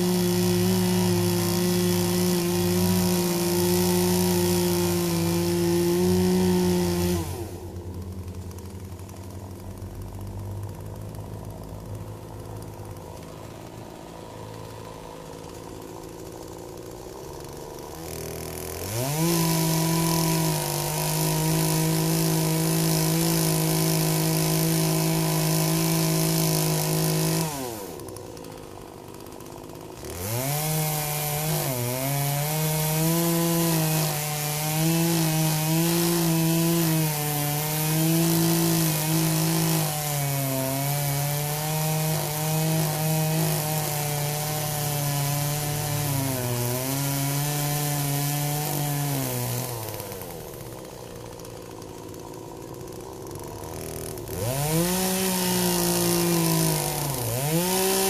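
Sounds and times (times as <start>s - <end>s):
chainsaw cutting wood: 0.0s - 58.0s.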